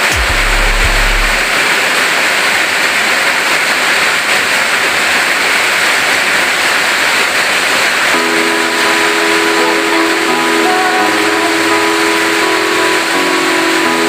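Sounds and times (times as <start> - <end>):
steady pitched tone: 0.0 - 1.6, 8.1 - 14.0
heavy rain pouring: 0.0 - 14.0.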